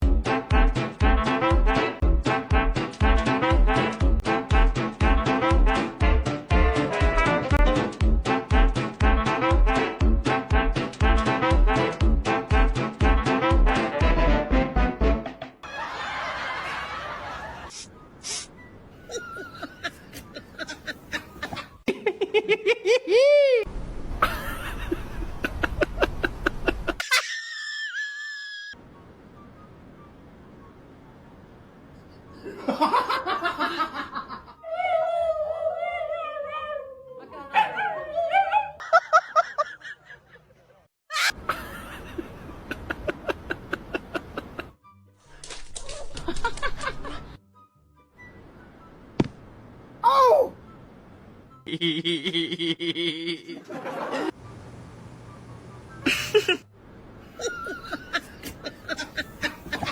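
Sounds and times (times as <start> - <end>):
person snickering softly: 19.0 - 22.2, 51.7 - 53.7, 56.0 - 56.6, 57.4 - 59.9
person laughing: 19.0 - 28.1, 38.8 - 44.7, 51.6 - 54.3, 56.0 - 56.7, 57.3 - 59.9
noisy hiss: 54.4 - 59.9.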